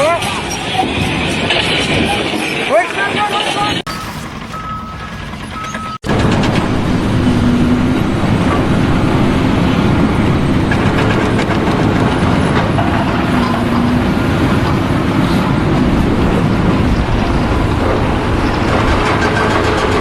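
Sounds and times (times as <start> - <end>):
short electronic beeps: 3.9 - 6.1
mechanical rumble with rattling clatter: 3.9 - 20.0.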